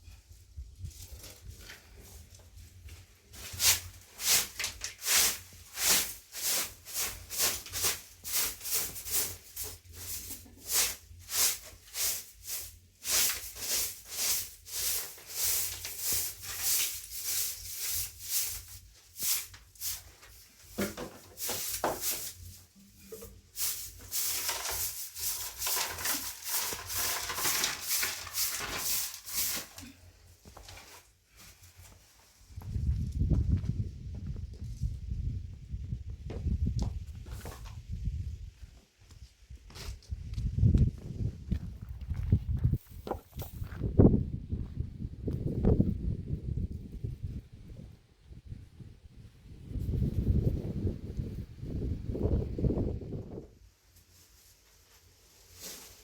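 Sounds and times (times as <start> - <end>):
hand rubbing or scraping strokes: 21.4 - 30.0.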